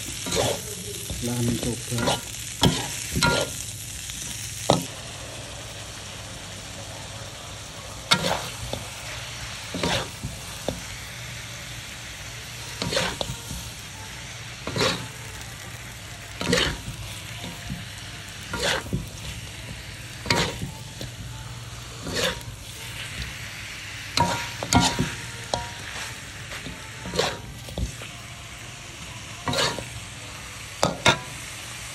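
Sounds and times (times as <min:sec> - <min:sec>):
chicken sizzling in a pan: 0:00.0 - 0:31.9
spatula scraping a pan: 0:00.1 - 0:03.7, 0:08.1 - 0:10.9, 0:12.7 - 0:13.6, 0:14.6 - 0:15.2, 0:16.4 - 0:17.7, 0:18.4 - 0:21.2, 0:22.0 - 0:28.1, 0:29.4 - 0:30.0.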